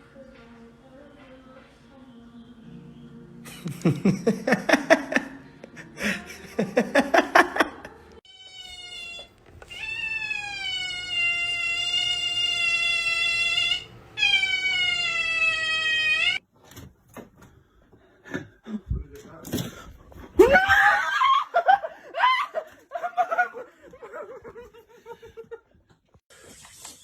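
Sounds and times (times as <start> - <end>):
cat yowling: 8.3 - 16.4.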